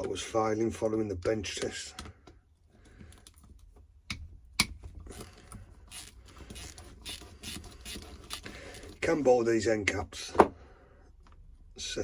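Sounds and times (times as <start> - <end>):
hand tools clicking and tapping: 4.1 - 9.0.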